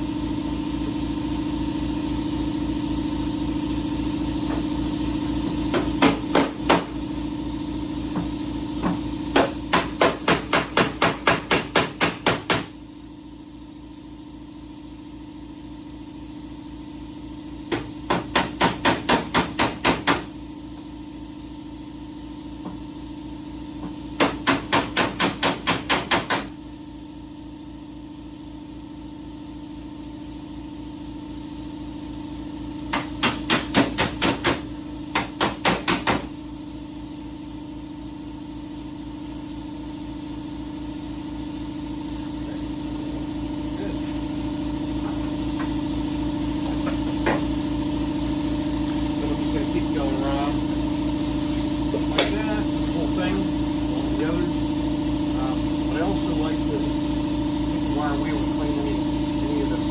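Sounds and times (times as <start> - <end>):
rapid strikes on metal: 5.7 - 6.9, 9.4 - 12.7, 24.2 - 26.5, 32.9 - 36.3
machine hum: 31.5 - 59.9.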